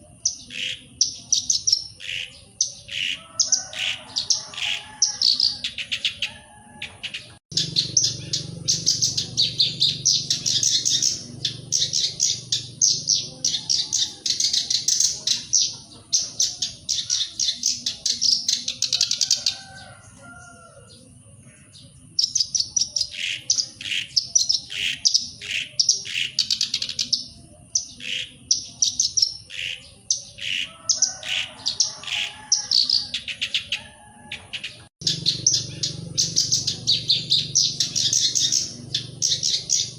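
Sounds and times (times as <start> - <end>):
bird singing scratchy chatter: 0.0 - 39.9.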